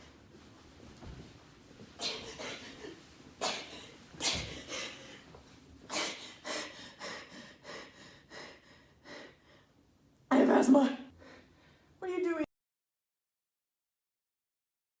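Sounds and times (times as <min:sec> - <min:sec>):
person breathing heavily: 0:03.7 - 0:05.3, 0:05.9 - 0:09.7.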